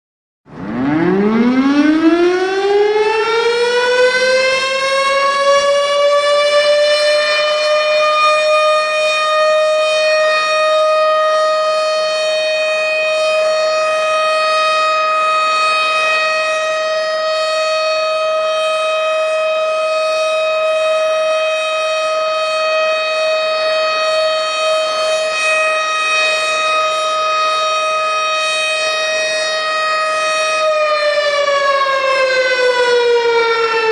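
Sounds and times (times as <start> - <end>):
tornado siren wailing: 0.5 - 33.9.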